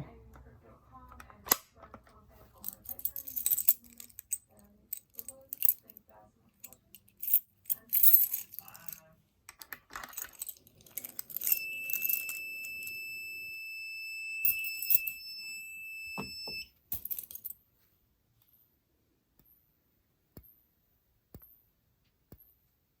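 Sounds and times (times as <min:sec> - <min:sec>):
high-pitched alarm sounder tone: 0:11.4 - 0:16.7.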